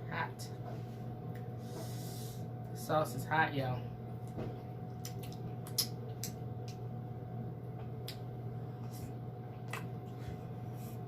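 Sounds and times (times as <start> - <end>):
steady low hum: 0.0 - 11.0
chewing smacks: 4.9 - 6.8.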